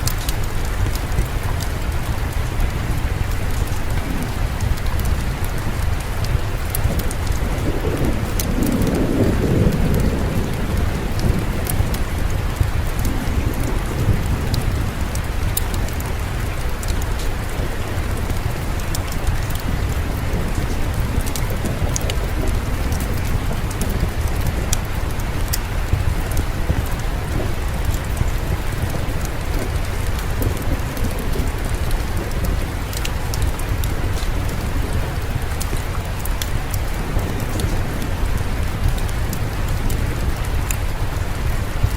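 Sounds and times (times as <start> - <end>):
distant thunder rumble: 0.0 - 41.9
fireplace crackles: 0.0 - 41.9
steady rainfall: 0.0 - 41.9.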